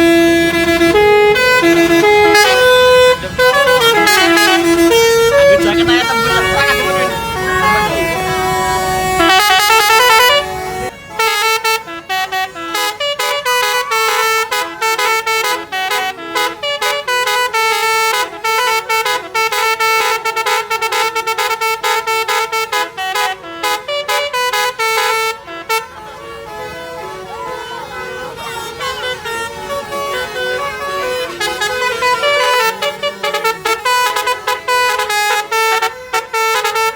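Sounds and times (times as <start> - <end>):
musical bus horn tune: 0.0 - 36.9.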